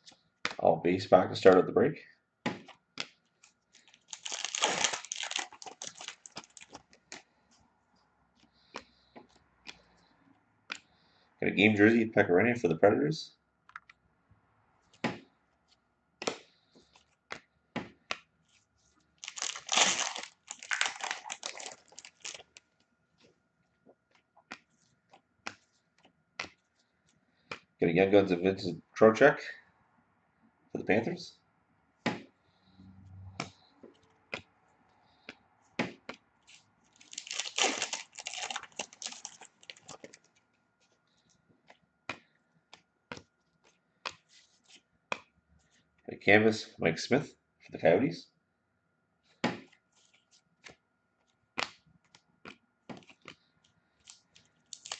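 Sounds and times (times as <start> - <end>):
foil wrapper tearing and crinkling: 3.8 - 6.8, 19.2 - 22.6, 36.9 - 40.2, 54.0 - 54.9.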